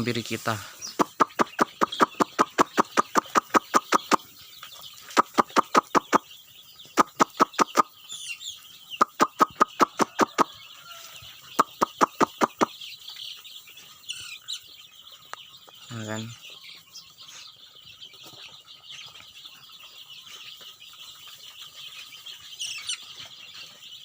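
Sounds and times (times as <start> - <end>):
chicks peeping: 0.0 - 24.0
person making clicking clucking calls: 0.9 - 4.3, 5.1 - 6.3, 6.9 - 7.9, 9.0 - 10.5, 11.6 - 12.8.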